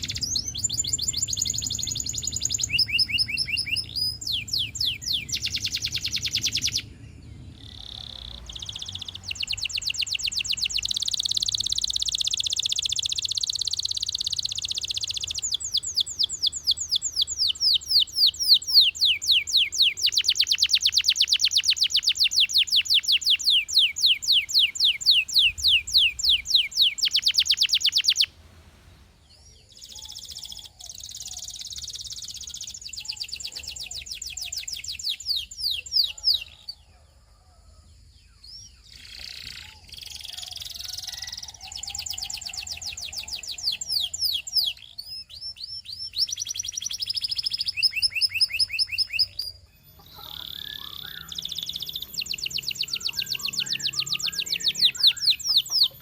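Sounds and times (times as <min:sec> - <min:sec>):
canary singing trills: 0:00.0 - 0:28.4, 0:29.1 - 0:56.0.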